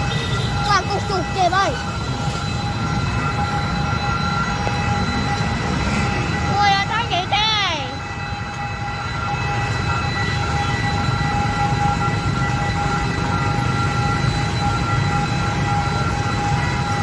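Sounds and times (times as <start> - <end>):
steady whining tones: 0.0 - 17.0.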